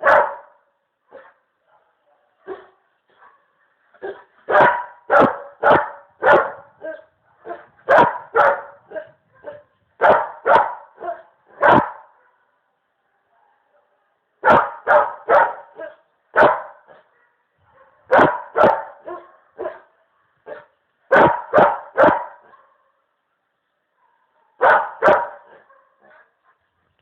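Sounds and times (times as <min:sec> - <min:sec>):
dog barking: 0:00.0 - 0:12.6, 0:13.2 - 0:23.1, 0:23.9 - 0:26.7.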